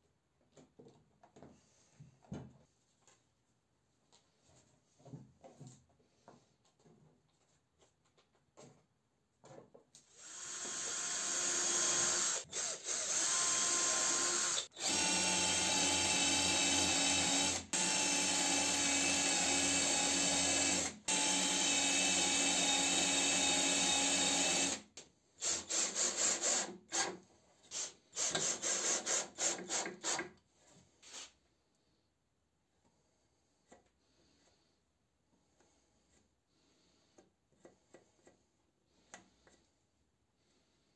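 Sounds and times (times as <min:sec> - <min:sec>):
cordless drill running: 0:10.1 - 0:24.8.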